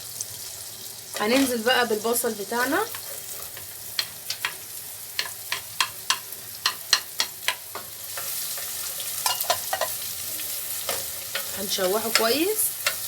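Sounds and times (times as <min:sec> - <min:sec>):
onion sizzling in pot: 0:00.0 - 0:13.0.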